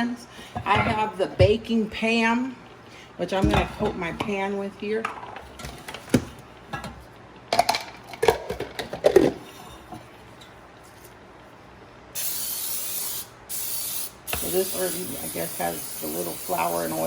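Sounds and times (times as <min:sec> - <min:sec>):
metal baking pans clinking: 0:00.6 - 0:01.6
aerosol can spraying: 0:12.2 - 0:17.0.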